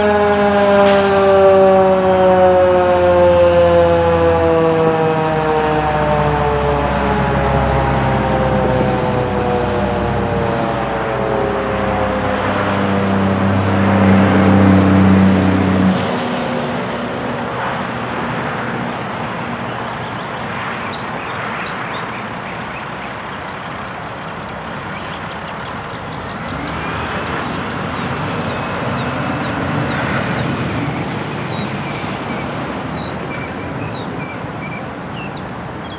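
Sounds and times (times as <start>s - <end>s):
warning siren winding down: 0.0s - 19.6s, 26.4s - 34.6s
road traffic noise: 0.0s - 35.9s
birds chirping: 19.4s - 35.9s.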